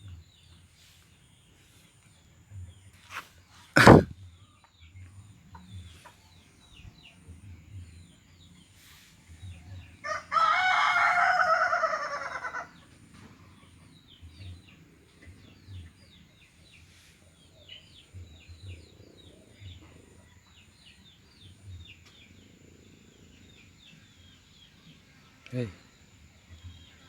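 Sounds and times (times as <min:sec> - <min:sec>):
rooster crowing: 0:10.0 - 0:12.8.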